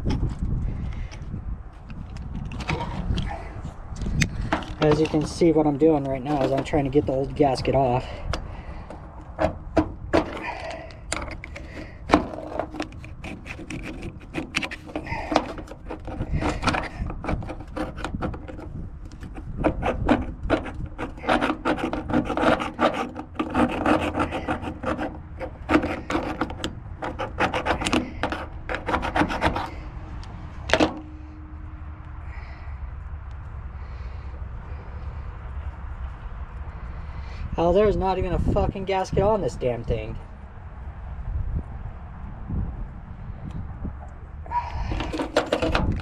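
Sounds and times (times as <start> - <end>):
hand tool scraping gasket: 4.0 - 30.0, 30.6 - 31.5, 44.5 - 46.0.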